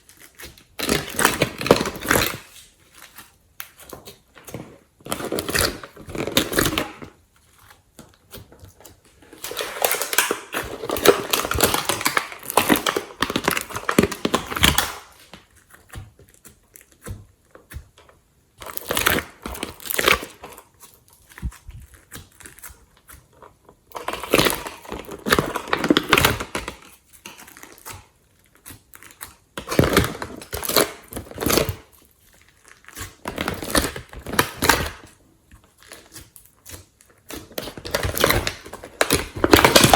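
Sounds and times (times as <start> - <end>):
hands squishing sticky slime: 0.0 - 39.9.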